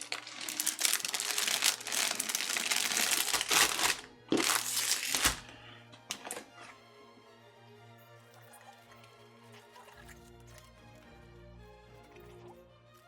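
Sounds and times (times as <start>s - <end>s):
plastic packaging crinkling: 0.0s - 5.5s.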